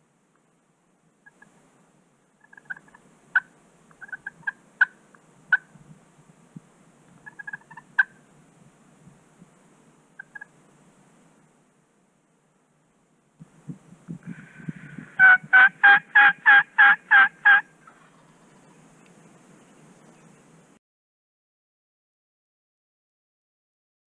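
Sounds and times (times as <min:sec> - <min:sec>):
turkey calling: 0:01.2 - 0:01.5, 0:02.4 - 0:05.8, 0:07.2 - 0:08.3, 0:10.2 - 0:10.6, 0:14.3 - 0:20.4
turkey clucks: 0:01.2 - 0:01.5, 0:02.4 - 0:05.8, 0:07.2 - 0:08.3, 0:10.2 - 0:10.6, 0:14.3 - 0:18.6.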